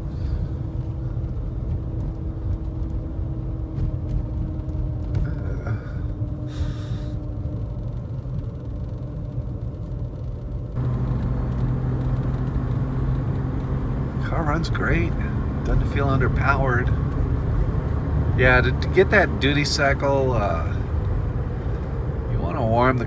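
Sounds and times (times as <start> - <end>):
car engine and road rumble: 0.0 - 23.0.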